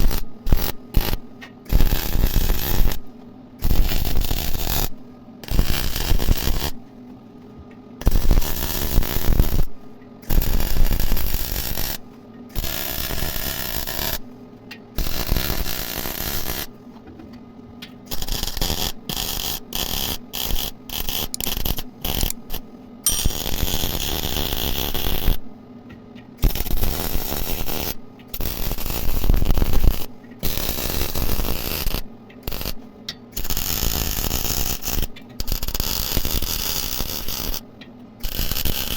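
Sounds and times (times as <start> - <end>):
welding arc crackling: 0.0 - 3.0, 3.6 - 4.9, 5.5 - 6.8, 8.0 - 9.7, 10.3 - 12.0, 15.0 - 16.7, 18.1 - 25.4, 26.4 - 32.8, 33.4 - 37.6, 38.2 - 38.9.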